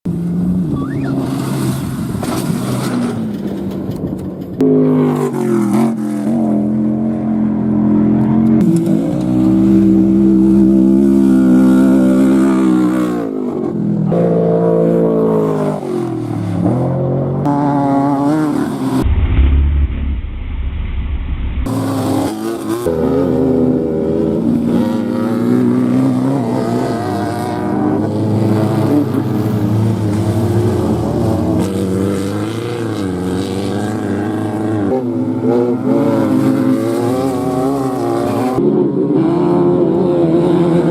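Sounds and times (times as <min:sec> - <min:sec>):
heavy low rumble: 0:19.0 - 0:21.8
race vehicle engines passing: 0:21.6 - 0:40.9.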